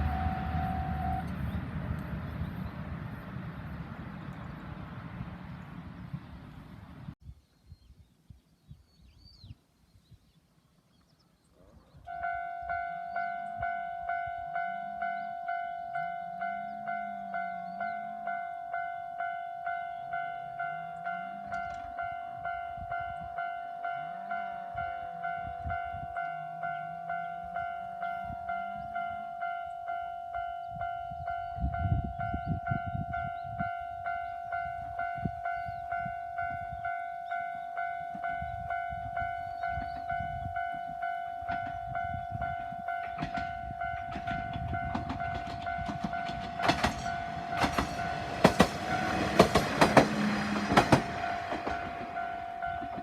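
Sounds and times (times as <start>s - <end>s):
train rumble: 0.0s - 7.2s, 13.4s - 36.9s, 37.8s - 53.0s
wheels clacking over rail joints: 41.5s - 53.0s.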